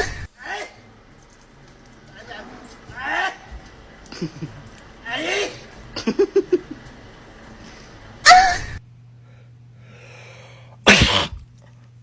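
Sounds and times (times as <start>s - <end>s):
person sneezing: 10.8s - 11.4s.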